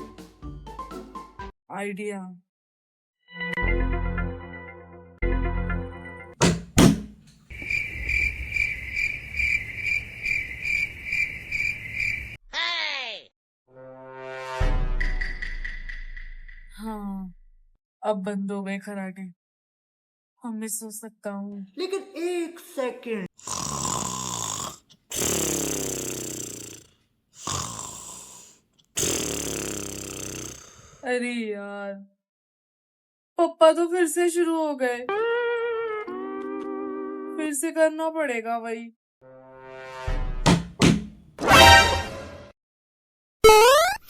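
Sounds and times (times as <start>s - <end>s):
cricket chirping: 7.5s - 12.4s
man snoring: 23.4s - 31.0s.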